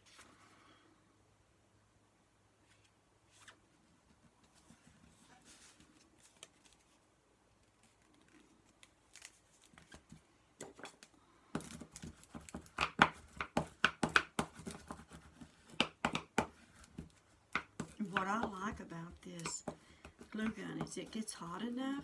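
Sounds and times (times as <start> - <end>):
paper rustling: 4.5 - 7.0, 7.6 - 10.2.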